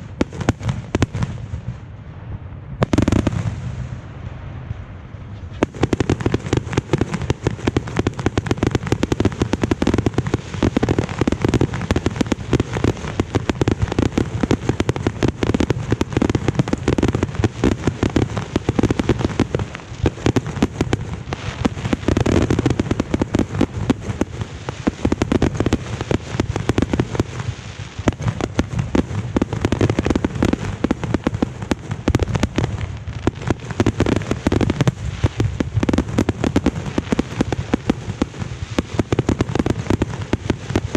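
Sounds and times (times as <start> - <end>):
fireworks booming and crackling: 0.0 - 40.9.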